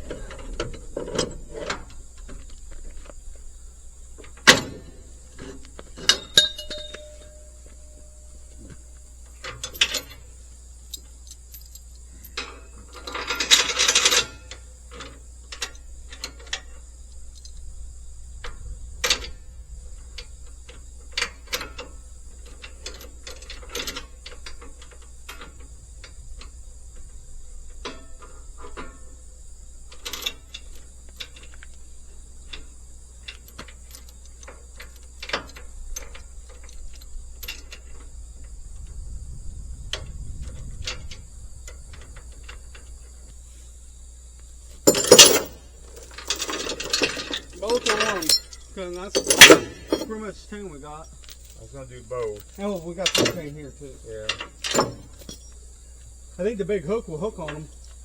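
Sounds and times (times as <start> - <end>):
metal chains clanking: 0.0 - 17.6, 21.1 - 25.6, 27.8 - 38.1, 44.7 - 55.6.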